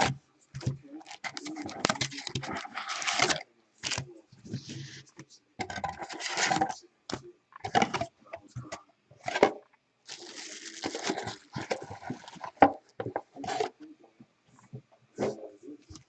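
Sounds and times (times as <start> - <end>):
packaging rustling and crinkling: 1.0 - 4.8, 10.1 - 12.8.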